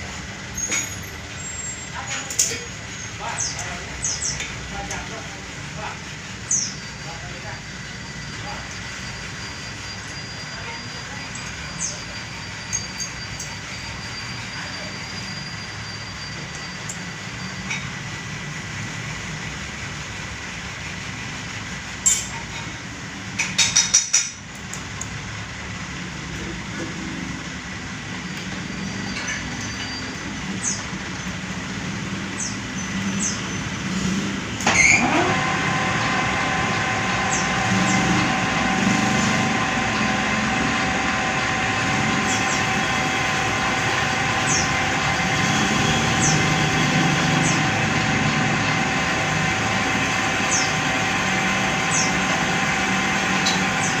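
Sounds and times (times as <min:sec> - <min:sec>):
steady multi-pitched whine: 0:03.0 - 0:22.3
metal lathe cutting: 0:34.6 - 0:54.0.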